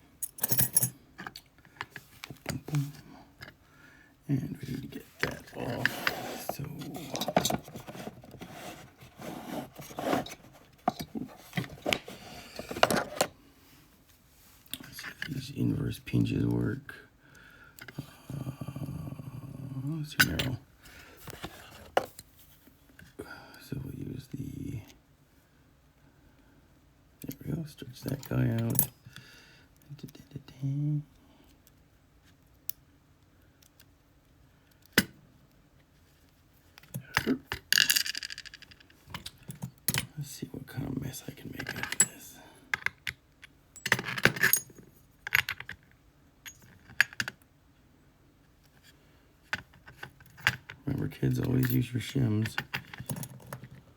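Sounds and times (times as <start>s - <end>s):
metal parts rubbing and scraping: 5.0s - 13.3s.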